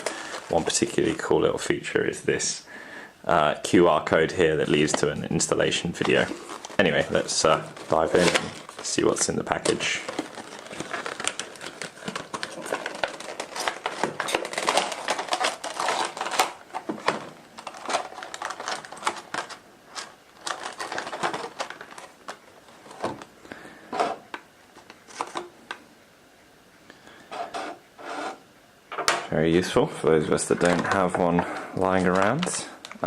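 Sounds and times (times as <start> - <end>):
packaging rustling and crinkling: 0.0 - 1.4, 3.8 - 25.5, 30.3 - 33.0.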